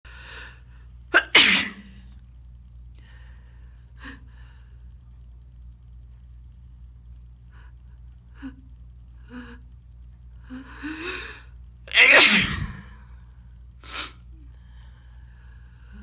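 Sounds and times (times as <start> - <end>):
person sneezing: 1.2 - 1.9, 11.9 - 13.0.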